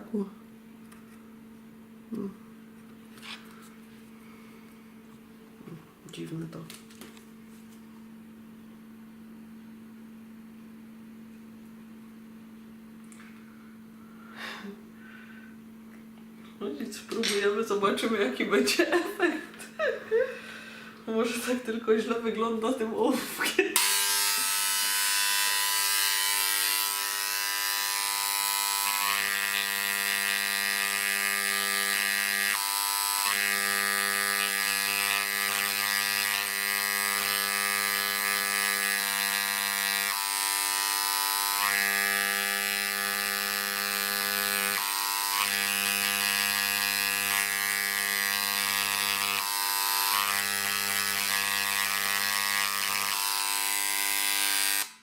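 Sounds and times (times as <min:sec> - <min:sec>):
electric engraver buzzing on wood: 0:23.8 - 0:55.0.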